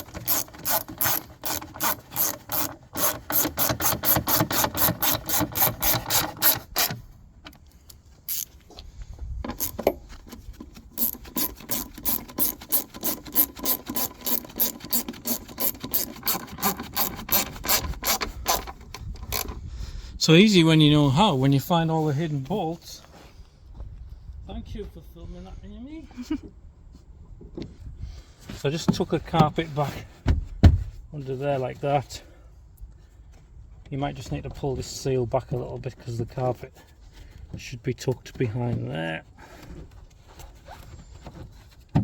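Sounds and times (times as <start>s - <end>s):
ratchet wrench clicking: 0.0s - 7.0s, 8.3s - 8.5s, 9.5s - 10.0s, 11.0s - 18.7s.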